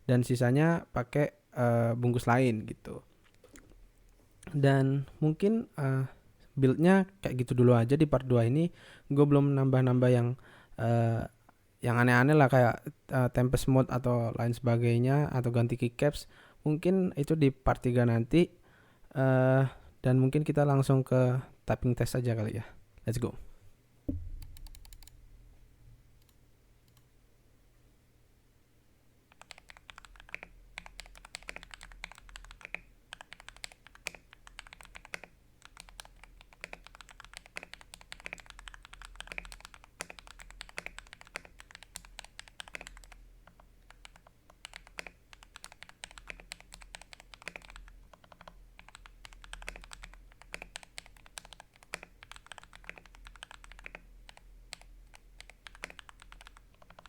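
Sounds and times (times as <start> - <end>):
mechanical keyboard typing: 24.4 - 25.2, 29.3 - 57.0.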